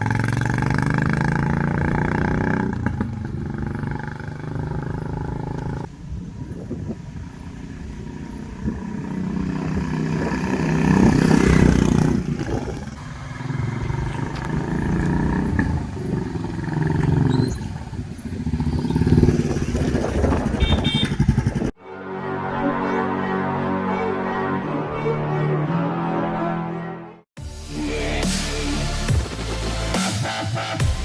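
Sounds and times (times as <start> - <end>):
motorcycle engine revving: 0.0 - 21.8
music: 21.8 - 31.0.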